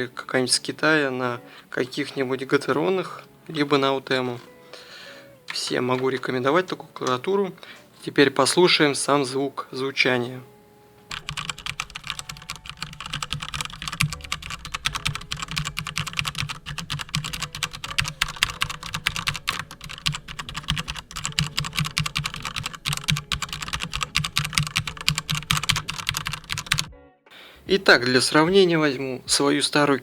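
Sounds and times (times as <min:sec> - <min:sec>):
fast mechanical keyboard typing: 0:11.1 - 0:26.9.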